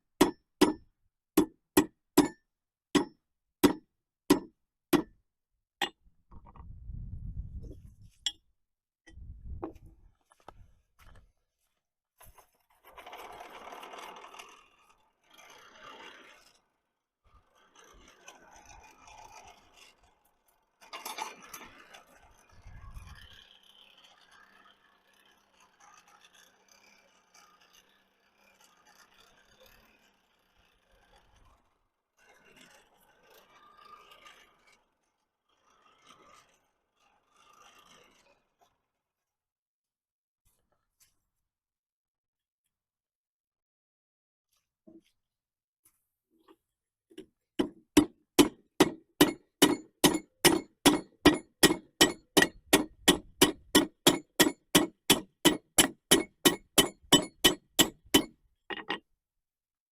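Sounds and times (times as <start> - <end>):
scraping on metal: 47.6 - 59.0.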